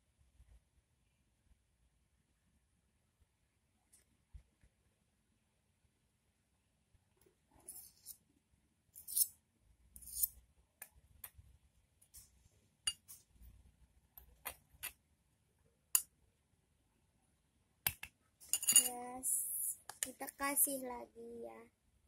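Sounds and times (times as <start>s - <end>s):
spoon clinking and scraping container: 9.0s - 9.3s, 18.4s - 19.0s.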